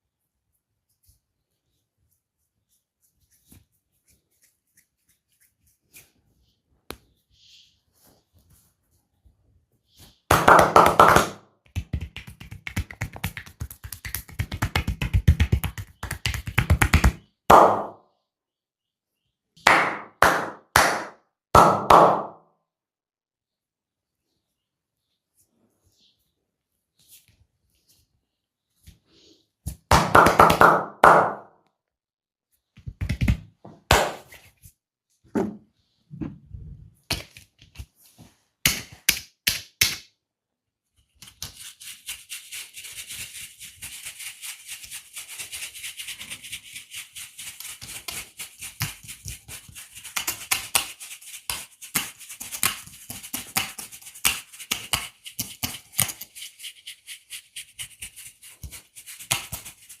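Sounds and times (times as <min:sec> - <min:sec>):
crisp rubbing strokes: 0:01.9 - 0:06.3.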